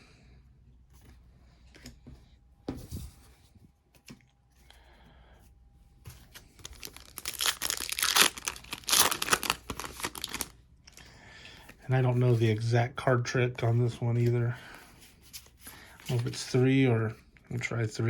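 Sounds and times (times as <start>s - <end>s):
foil wrapper tearing and crinkling: 6.6s - 10.6s.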